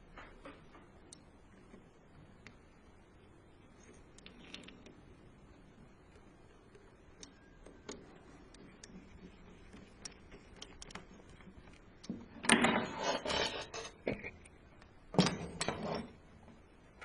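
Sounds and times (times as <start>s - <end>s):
clattering and scraping: 8.7s - 14.5s, 15.2s - 16.2s.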